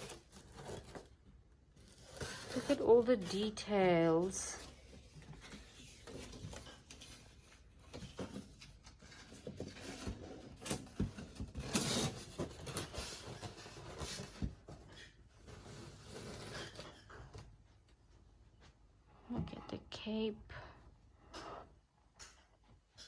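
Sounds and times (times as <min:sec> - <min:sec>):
rubbing and rustling: 0:00.0 - 0:18.3.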